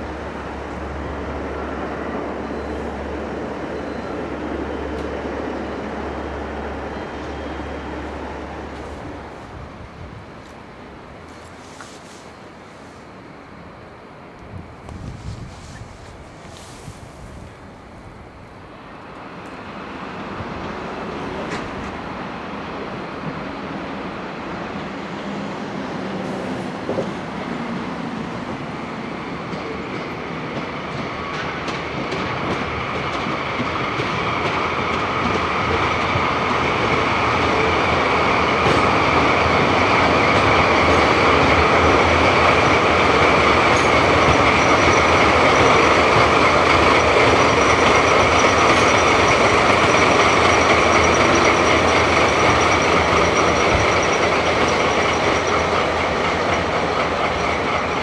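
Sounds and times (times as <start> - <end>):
train rolling on rails: 0.0 - 58.0
high ringing from wheels: 40.2 - 58.0.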